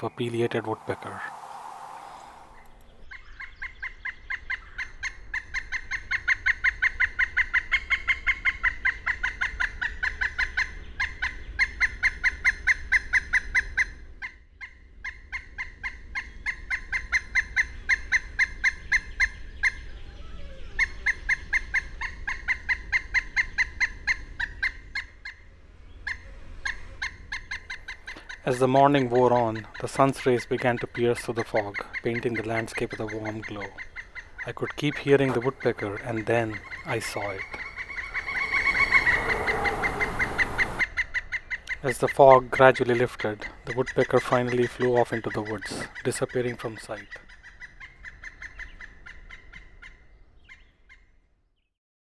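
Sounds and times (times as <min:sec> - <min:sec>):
woodpecker calling: 0:00.0 - 0:13.9, 0:26.1 - 0:51.1.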